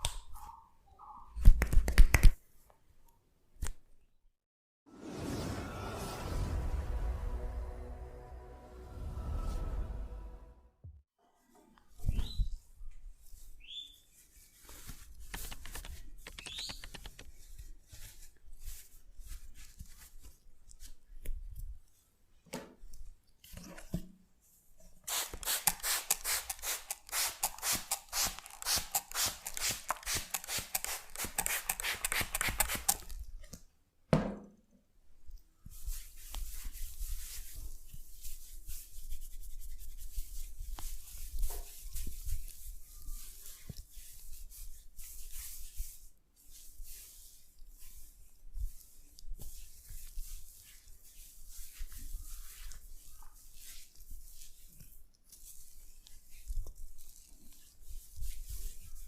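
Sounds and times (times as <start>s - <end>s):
fingers rubbing hair and scalp: 13.2s - 21.3s, 25.1s - 33.2s, 35.6s - 59.0s.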